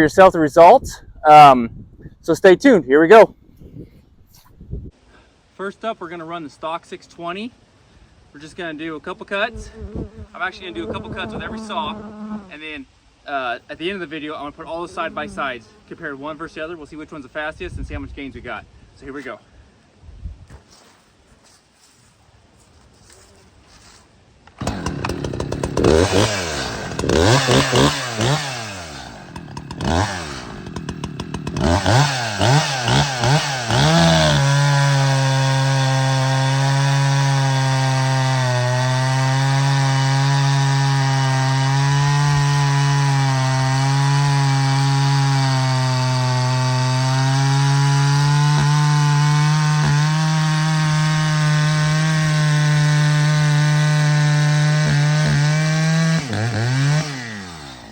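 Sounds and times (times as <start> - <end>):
chainsaw revving: 24.6 - 57.9.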